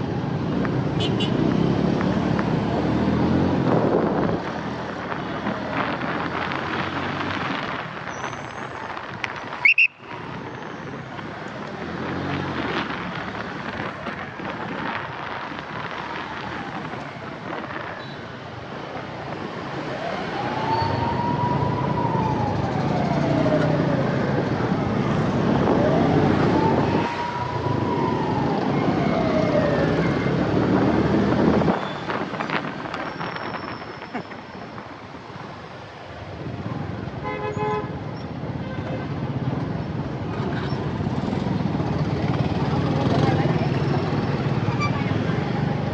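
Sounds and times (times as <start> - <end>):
road traffic noise: 0.0 - 45.9
ambulance siren wailing: 19.6 - 30.8.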